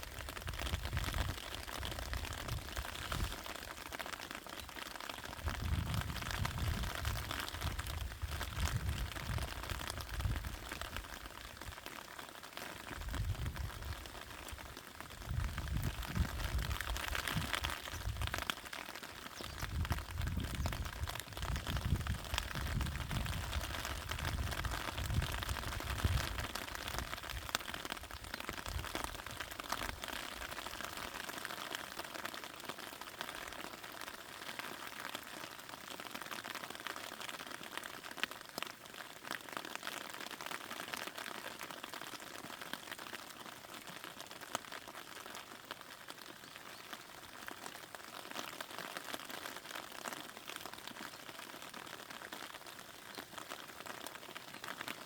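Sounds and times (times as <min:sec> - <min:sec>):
rain hissing: 0:00.0 - 0:31.9
raindrops ticking on leaves: 0:00.0 - 0:55.0.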